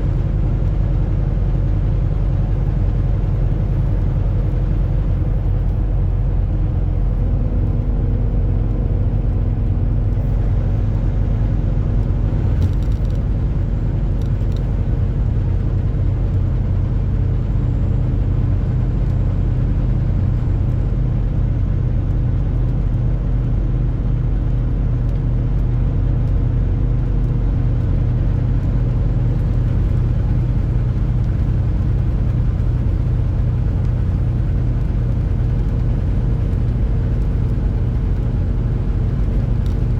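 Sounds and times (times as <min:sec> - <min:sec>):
faint engine hum: 0:00.0 - 0:39.9
truck engine and road rumble: 0:00.0 - 0:39.9.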